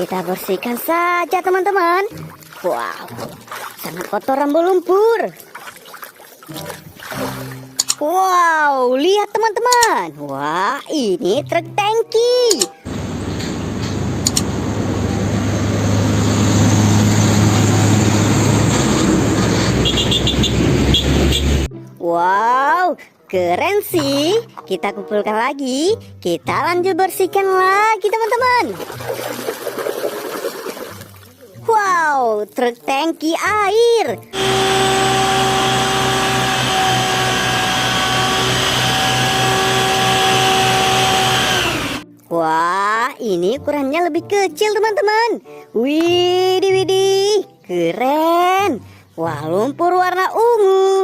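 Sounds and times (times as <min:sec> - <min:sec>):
vehicle engine humming: 0:12.9 - 0:21.7, 0:34.4 - 0:42.0
small electric motor whining: 0:34.4 - 0:42.0.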